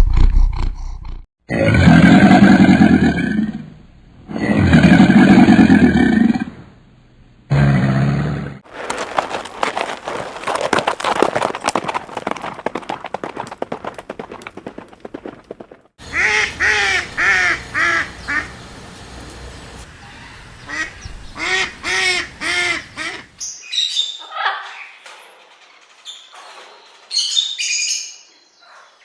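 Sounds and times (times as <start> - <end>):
rapid clattering animal chatter: 16.0 - 23.2.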